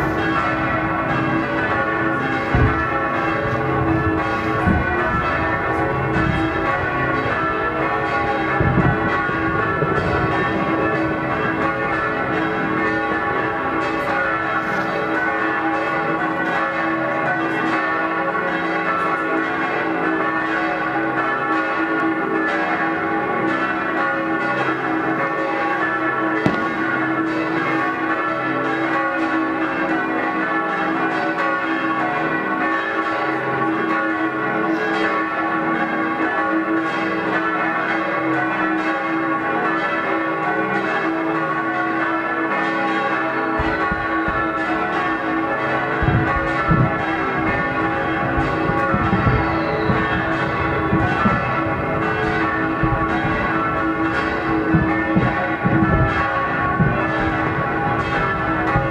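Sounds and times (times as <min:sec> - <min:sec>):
church bells pealing: 0:00.0 - 0:58.9
low thuds: 0:02.4 - 0:07.4, 0:43.6 - 0:58.9
sharp crack: 0:26.5 - 0:27.2.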